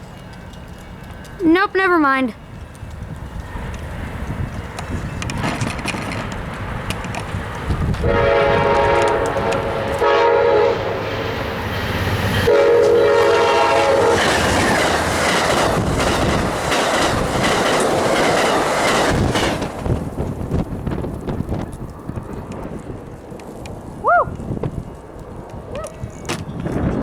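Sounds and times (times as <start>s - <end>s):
wheels clacking over rail joints: 0.0s - 10.3s, 11.0s - 27.0s
train passing rumble: 0.0s - 27.0s
locomotive air horn blasts: 8.0s - 11.4s, 12.5s - 14.3s.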